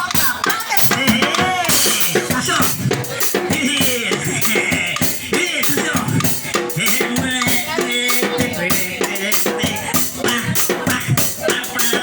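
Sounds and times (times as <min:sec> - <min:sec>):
upbeat band music: 0:00.0 - 0:12.0.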